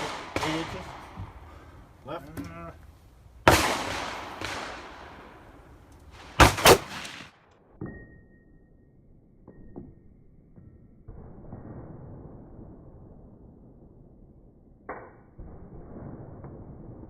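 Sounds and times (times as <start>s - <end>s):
gunshots echoing: 0.0s - 1.9s, 3.4s - 7.5s.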